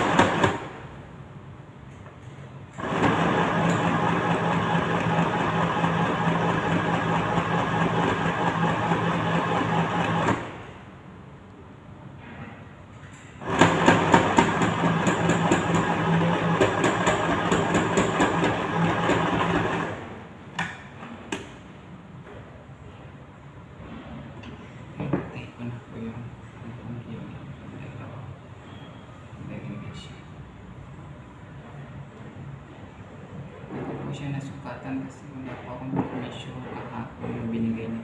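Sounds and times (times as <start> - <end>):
sewing machine stitching: 0.0 - 0.6, 2.8 - 10.6, 13.4 - 20.0.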